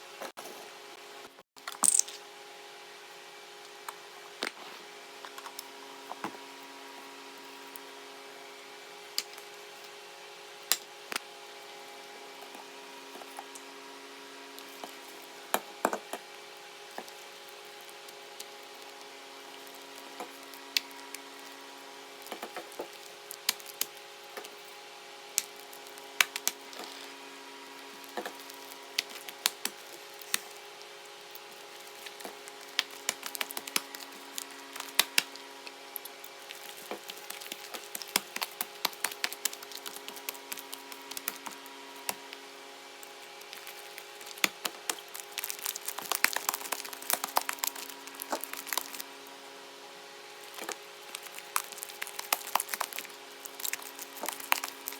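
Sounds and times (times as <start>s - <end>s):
faint steady hum: 0.0s - 54.9s
slime crackling and popping: 22.2s - 24.6s, 25.3s - 26.8s, 28.0s - 30.6s, 31.2s - 42.4s, 43.0s - 49.1s, 50.4s - 54.9s.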